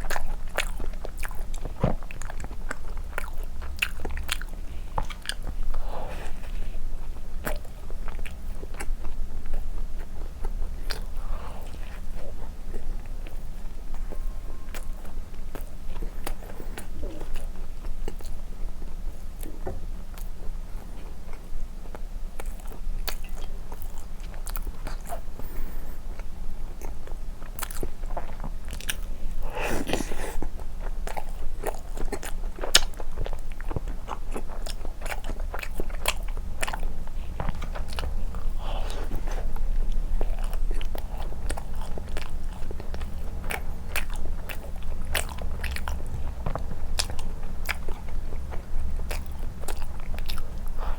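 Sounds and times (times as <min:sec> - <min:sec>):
person biting and chewing: 0:27.5 - 0:50.9.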